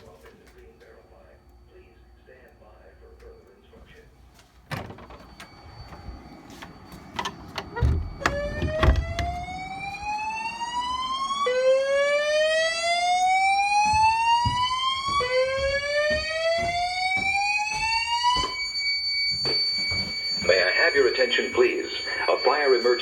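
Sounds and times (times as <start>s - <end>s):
steady high-pitched tone: 5.0s - 23.0s
rising whoop evacuation tone: 8.3s - 16.0s.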